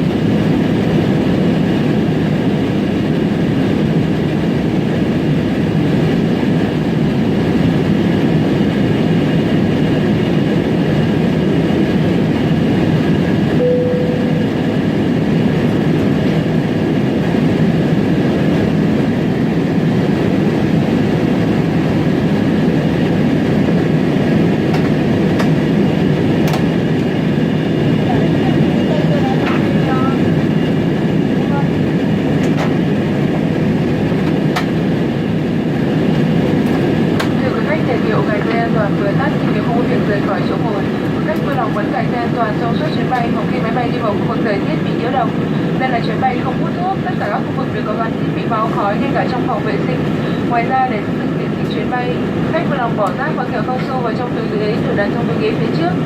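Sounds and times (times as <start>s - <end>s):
airliner cabin engine noise: 0.0s - 56.0s
brief tone: 13.6s - 15.0s.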